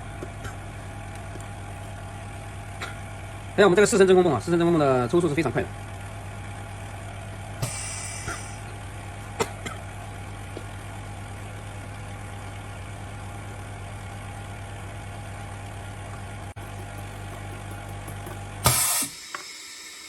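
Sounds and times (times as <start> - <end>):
vacuum pump humming: 0.0 - 14.3, 16.1 - 20.0
air hissing: 7.6 - 8.8, 17.7 - 20.0.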